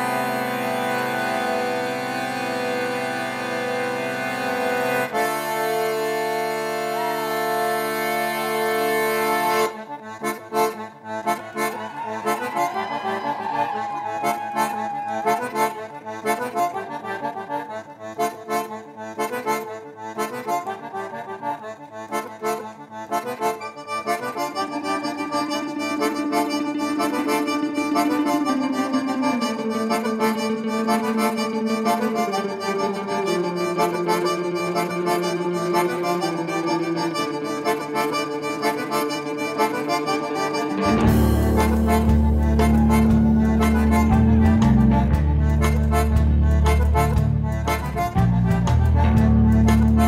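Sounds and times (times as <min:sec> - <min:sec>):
live band music: 0:00.0 - 0:50.0
squeezebox chord: 0:23.2 - 0:50.0.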